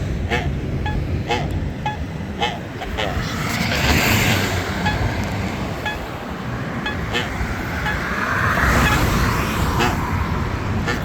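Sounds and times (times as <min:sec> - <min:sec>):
road traffic passing: 0:00.0 - 0:11.0
pedestrian button locator ticks: 0:04.8 - 0:06.2, 0:06.8 - 0:08.1.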